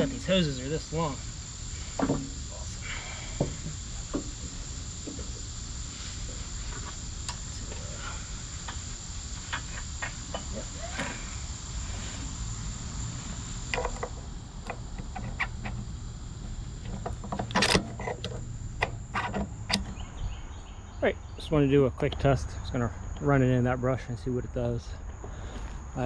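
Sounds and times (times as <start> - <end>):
insects droning: 0.0 - 26.0
small clicks and knocks: 16.8 - 20.0.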